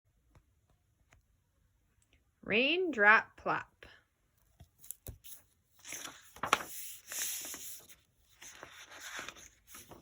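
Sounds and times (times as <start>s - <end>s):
book pages rustling: 4.4s - 10.0s.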